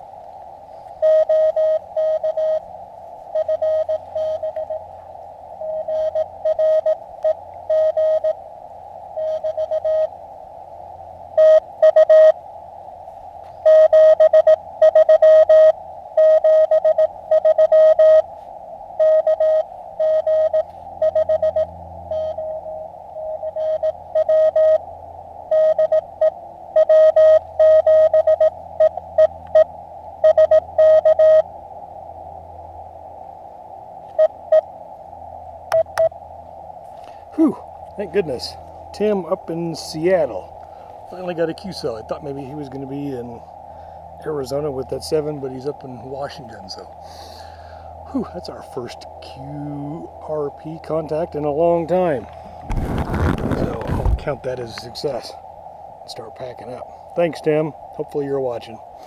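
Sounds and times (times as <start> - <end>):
receiver hiss: 0.0 - 59.0
morse code tone: 1.0 - 2.7, 3.3 - 4.9, 5.6 - 8.4, 9.2 - 10.2, 11.3 - 12.4, 13.6 - 18.4, 19.0 - 24.8, 25.5 - 31.5, 34.2 - 34.7, 35.7 - 36.2.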